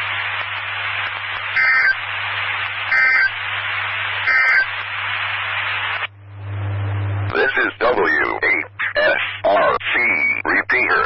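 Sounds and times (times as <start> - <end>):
radio hiss: 0.0 - 11.0
digital data tone bursts: 1.5 - 2.0, 2.9 - 3.4, 4.2 - 4.7.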